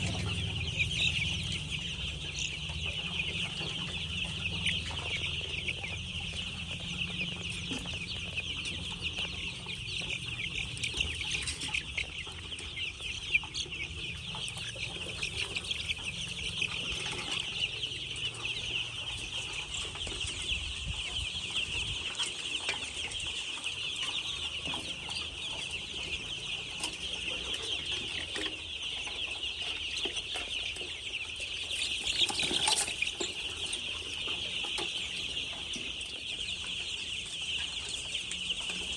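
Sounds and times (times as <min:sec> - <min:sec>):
low hum: 0:00.0 - 0:11.5
hens clucking: 0:00.0 - 0:38.9.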